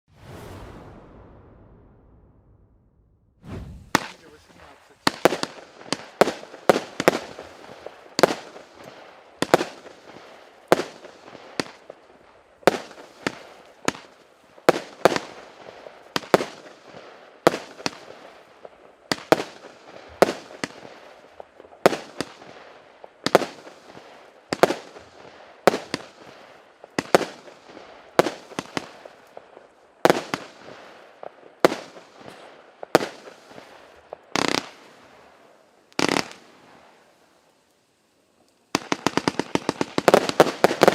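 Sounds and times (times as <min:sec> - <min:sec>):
firework bangs: 0:00.1 - 0:37.1, 0:38.7 - 0:40.9
faint firework pops: 0:03.4 - 0:09.9.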